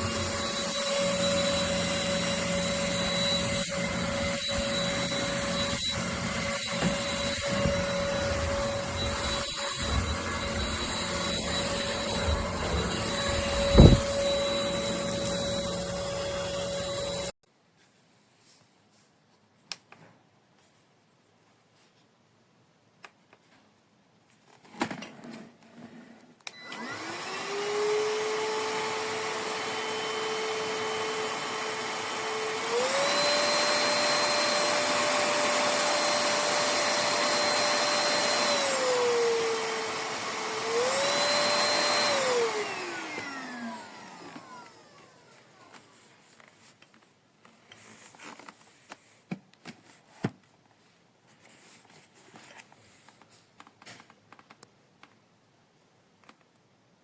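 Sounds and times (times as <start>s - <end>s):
vacuum cleaner motor whine: 0.0s - 17.4s, 26.5s - 46.4s.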